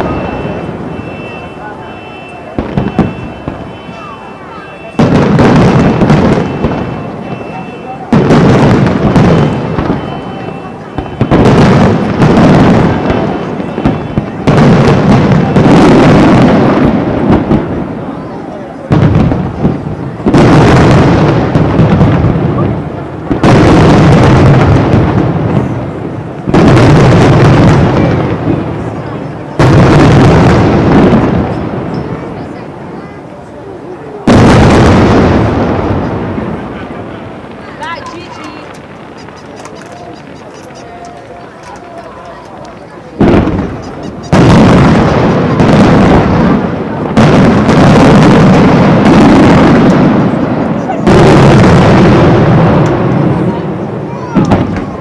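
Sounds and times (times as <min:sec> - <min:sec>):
fireworks booming: 0:00.0 - 0:55.0
fireworks shells bursting: 0:34.3 - 0:55.0.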